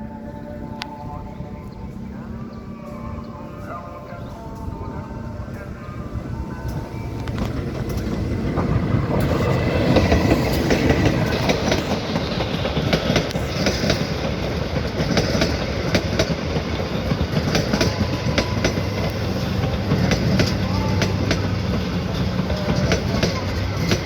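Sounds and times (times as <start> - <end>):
train rumble: 0.0 - 24.0
train wheels clacking: 1.9 - 24.0.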